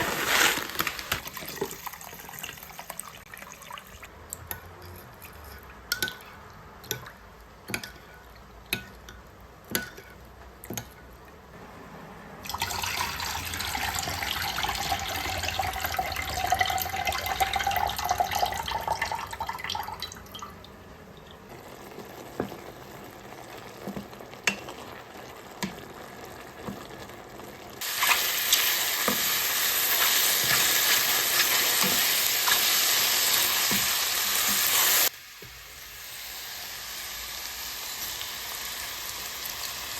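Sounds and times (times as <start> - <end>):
water running: 12.4 - 20.7
food sizzling in a hot pan: 21.5 - 39.9.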